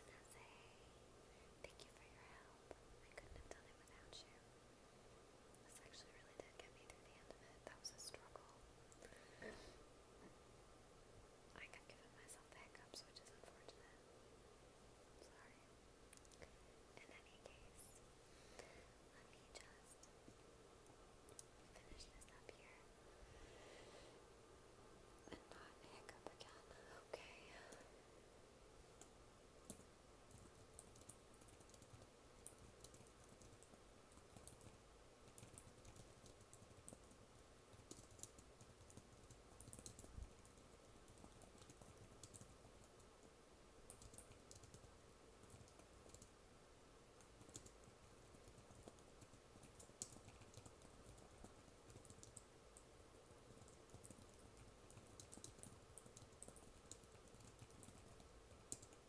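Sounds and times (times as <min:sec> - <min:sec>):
soft keyboard typing: 0:16.2 - 0:18.0, 0:20.8 - 0:22.8, 0:28.8 - 0:46.4, 0:47.2 - 0:59.0.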